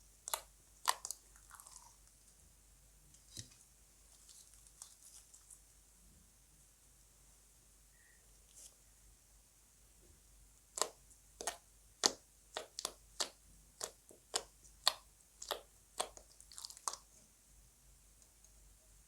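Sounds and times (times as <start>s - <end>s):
slime popping and squelching: 0.2s - 2.0s, 10.7s - 17.1s.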